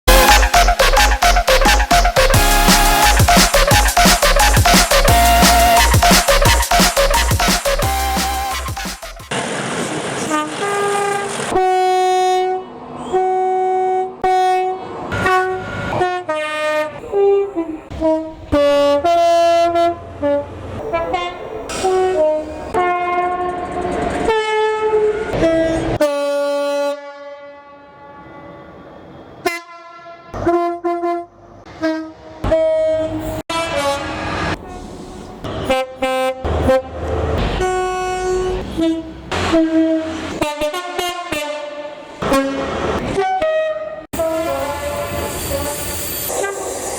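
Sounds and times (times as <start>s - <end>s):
train horns playing a tune: 10.2s - 23.4s, 24.3s - 28.8s, 29.4s - 34.6s, 35.6s - 37.0s, 37.6s - 46.9s.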